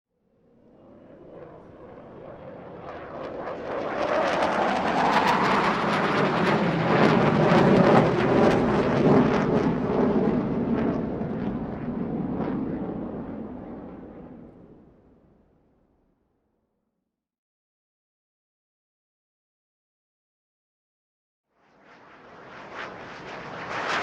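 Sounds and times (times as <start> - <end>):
airplane passing overhead: 0.2 - 15.1, 21.6 - 24.0.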